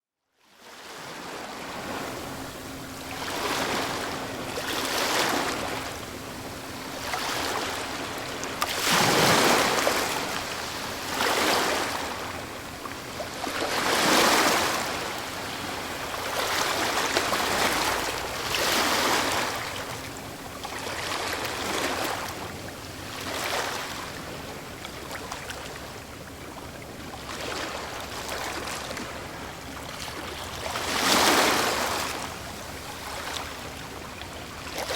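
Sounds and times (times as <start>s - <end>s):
waves breaking on stony shore: 0.6s - 22.4s, 23.1s - 25.8s, 27.2s - 33.9s
distant vessel hum: 1.2s - 34.9s.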